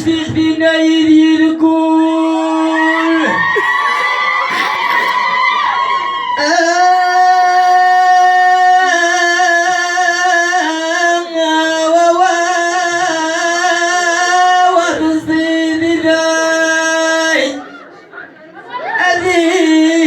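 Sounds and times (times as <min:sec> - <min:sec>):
mixed voices: 0:03.3 - 0:08.1.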